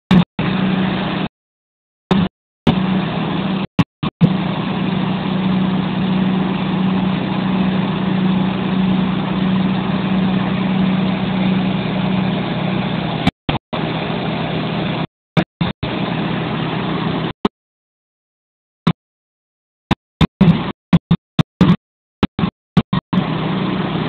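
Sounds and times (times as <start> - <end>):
diesel engine running: 0.1 - 1.3, 2.1 - 17.5, 20.4 - 24.0.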